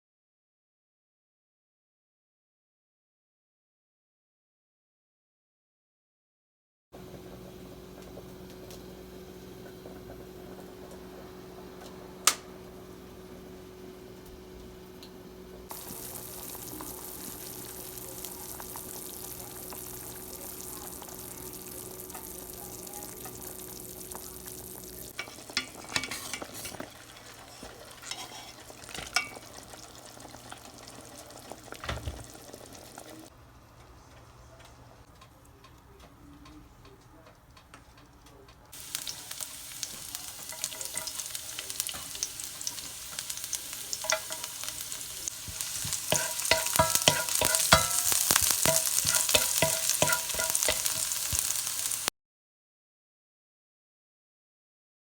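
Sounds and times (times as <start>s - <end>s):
food sizzling in oil: 7.0s - 33.3s, 38.8s - 52.1s
utensil clattering against pan: 25.1s - 29.6s, 39.0s - 51.6s.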